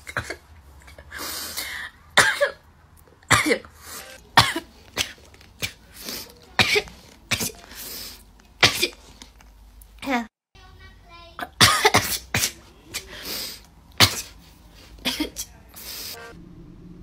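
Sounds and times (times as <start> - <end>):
person coughing: 0.0 - 2.6, 3.3 - 3.7, 4.4 - 7.7, 8.6 - 9.1, 11.5 - 13.3, 14.0 - 14.4, 15.0 - 15.5
noisy breaths: 0.9 - 2.2, 3.7 - 4.2, 5.8 - 8.4, 13.0 - 15.0, 15.7 - 16.4.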